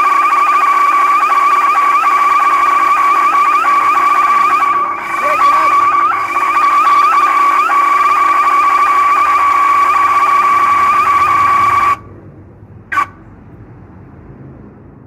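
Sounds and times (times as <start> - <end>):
car alarm high tone: 0.0 - 12.1
short car alarm beep: 4.6 - 7.8.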